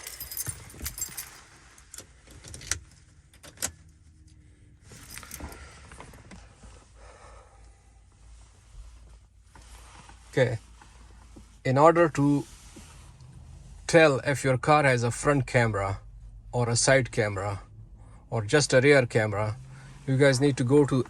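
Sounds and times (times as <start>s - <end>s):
small parts jingling and clicking: 0.0s - 2.8s, 4.9s - 5.6s.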